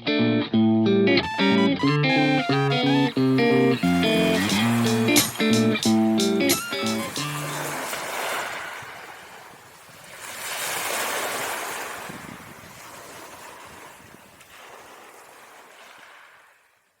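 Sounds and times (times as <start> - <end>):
rushing surf-like noise: 3.1 - 9.1.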